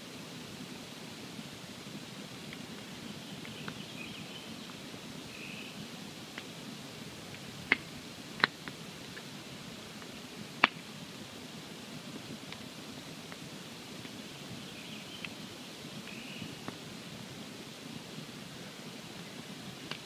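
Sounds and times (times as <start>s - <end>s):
campfire rustling and crackling: 0.0s - 20.0s
burning wood popping: 6.3s - 11.2s.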